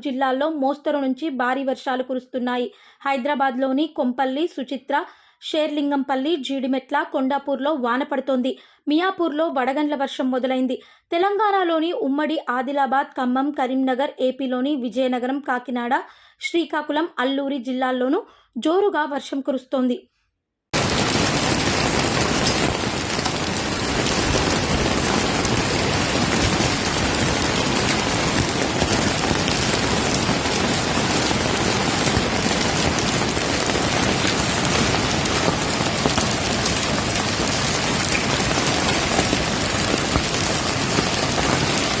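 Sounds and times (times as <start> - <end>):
heavy rain falling: 20.8 - 42.0
raindrops ticking on hard surfaces: 20.8 - 42.0.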